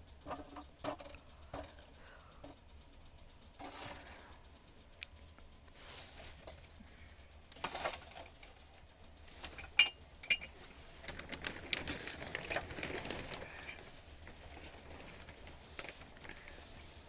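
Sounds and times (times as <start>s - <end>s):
small knocks and rustling: 0.2s - 2.6s, 7.5s - 17.0s
metallic clinks: 9.5s - 14.0s.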